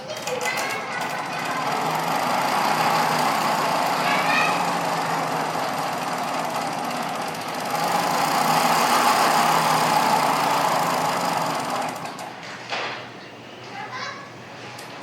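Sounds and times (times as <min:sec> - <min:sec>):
vehicle engine running: 0:01.0 - 0:12.4.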